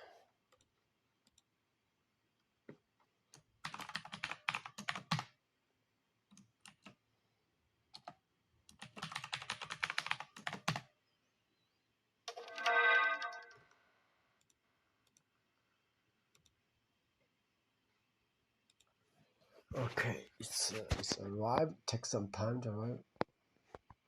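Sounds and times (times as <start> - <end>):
typing on keyboard: 3.3 - 5.4, 6.3 - 7.0, 7.9 - 11.0.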